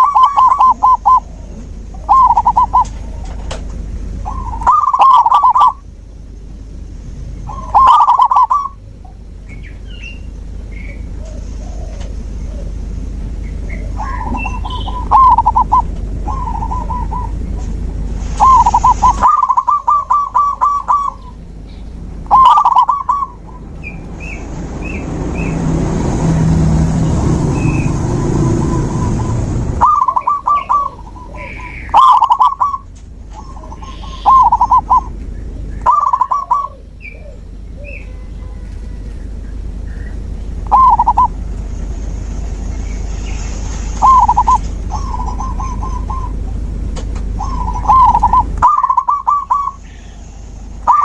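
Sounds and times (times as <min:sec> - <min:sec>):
dove cooing: 0:00.0 - 0:03.5, 0:04.2 - 0:05.8, 0:07.5 - 0:08.8, 0:11.0 - 0:12.8, 0:13.7 - 0:17.5, 0:18.4 - 0:21.4, 0:22.3 - 0:23.6, 0:28.6 - 0:35.2, 0:35.8 - 0:38.0, 0:40.6 - 0:41.4, 0:44.0 - 0:46.6, 0:47.3 - 0:50.2
rushing noise: 0:10.1 - 0:36.6, 0:38.3 - 0:51.0
faint bird chirps: 0:13.5 - 0:17.5, 0:29.8 - 0:38.5.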